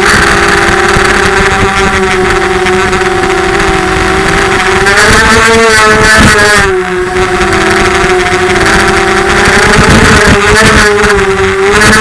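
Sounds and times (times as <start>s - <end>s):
quadcopter motors whining: 0.0s - 12.0s.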